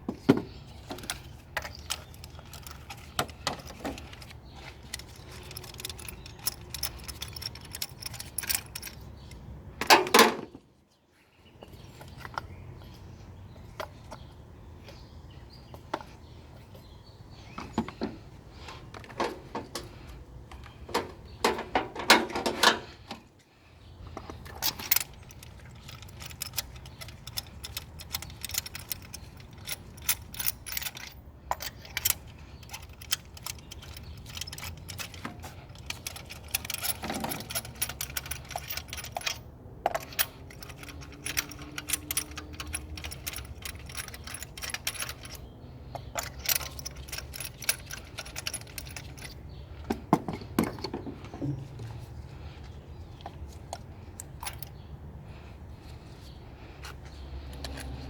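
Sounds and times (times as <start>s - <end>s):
metal hand tools clinking: 0.8s - 10.3s, 24.1s - 51.6s, 56.2s - 58.0s
ratchet clatter: 0.9s - 10.0s, 24.5s - 49.4s.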